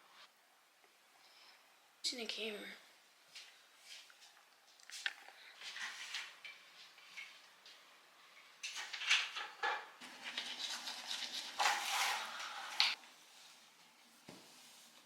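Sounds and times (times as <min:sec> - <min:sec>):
objects rustling and clattering: 0:03.4 - 0:13.0.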